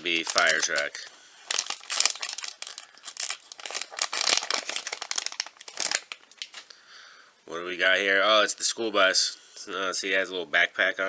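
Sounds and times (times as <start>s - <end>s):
plastic packaging crinkling: 0.0s - 6.7s.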